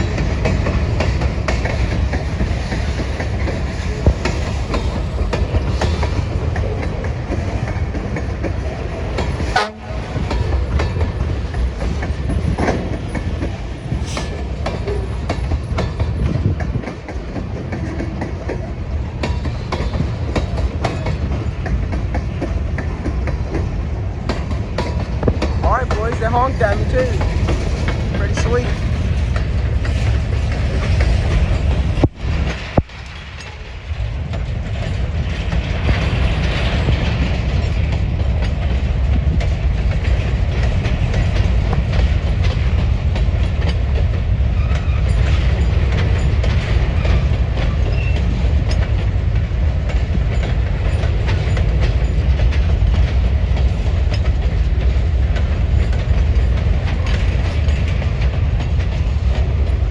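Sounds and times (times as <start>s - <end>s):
freight train rumbling past: 0.0s - 59.9s
wheels clicking over rail joints: 0.0s - 59.9s.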